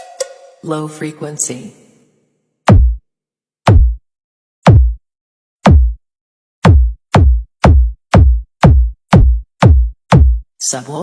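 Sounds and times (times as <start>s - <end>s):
electronic kick drum thumps: 2.7s - 5.0s, 5.6s - 6.0s, 6.6s - 10.5s.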